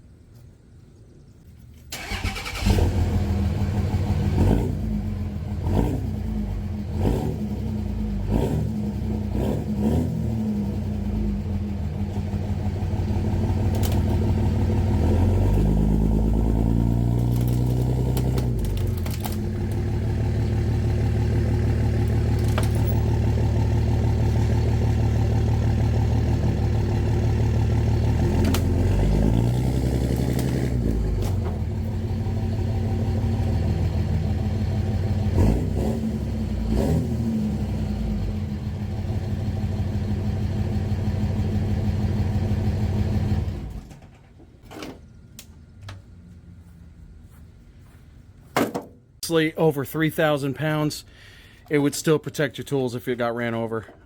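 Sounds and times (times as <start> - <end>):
truck engine revving: 2.0 - 43.8
sharp knocks: 48.5 - 49.0.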